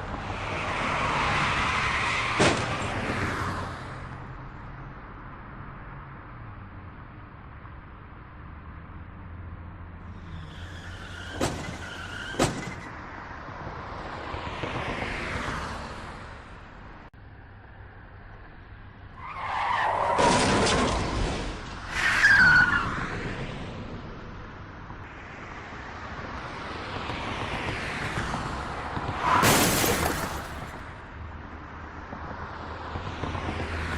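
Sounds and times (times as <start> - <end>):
cars passing: 0.0 - 18.0, 18.7 - 33.9
tyres squealing in skid: 10.2 - 12.9, 19.2 - 20.7, 21.8 - 23.0, 29.2 - 30.7.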